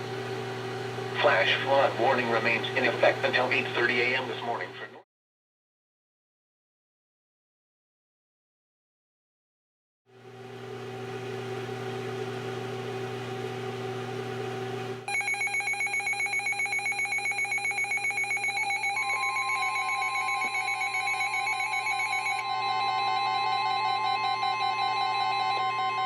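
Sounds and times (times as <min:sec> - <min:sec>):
radio hiss and hum: 0:01.1 - 0:05.0
alert alarms beeping rapidly: 0:15.1 - 0:26.0
steady warning alarm tone: 0:15.1 - 0:26.0.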